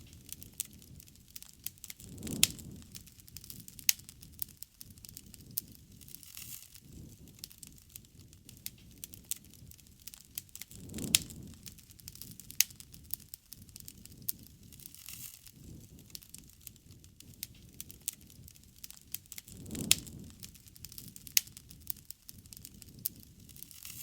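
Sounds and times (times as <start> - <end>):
campfire crackling and popping: 0.0 - 24.0
low rush of flame: 0.0 - 24.0.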